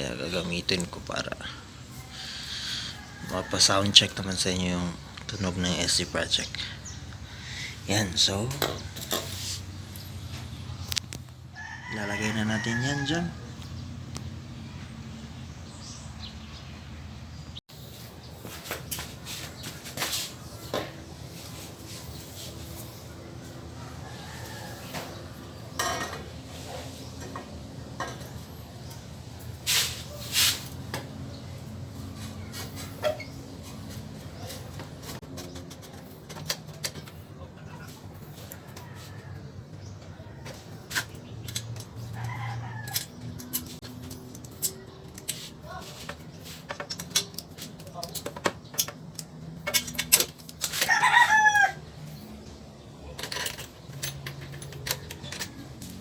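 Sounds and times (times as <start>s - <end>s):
metal exhaust parts scraping: 0.0s - 11.0s, 24.0s - 39.4s, 40.8s - 51.8s
rooster crowing: 1.9s - 4.2s, 11.5s - 13.6s, 23.7s - 25.4s, 38.5s - 39.4s, 42.0s - 43.2s, 50.7s - 52.0s
clicks and knocks of hand work: 39.7s - 51.0s.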